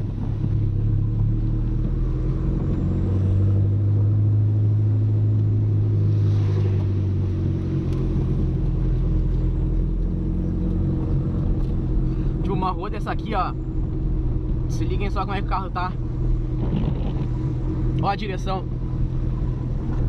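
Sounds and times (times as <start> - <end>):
car engine humming: 0.0 - 20.0.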